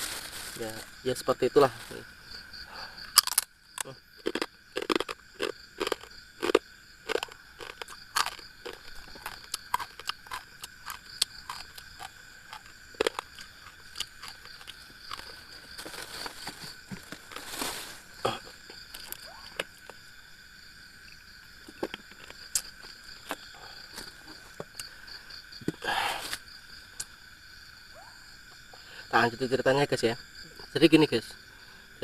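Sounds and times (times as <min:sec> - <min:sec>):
person chewing crunchy food: 0:03.1 - 0:20.0, 0:21.6 - 0:24.9.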